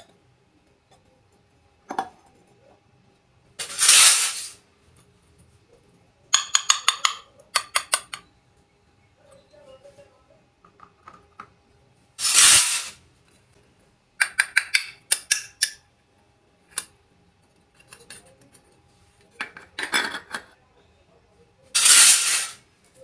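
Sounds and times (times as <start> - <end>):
toy pieces scraping: 21.8 - 22.6.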